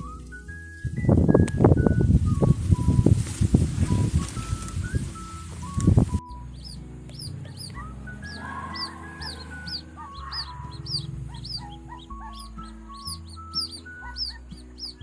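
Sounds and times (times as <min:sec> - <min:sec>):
bird chirps: 0:03.7 - 0:15.0.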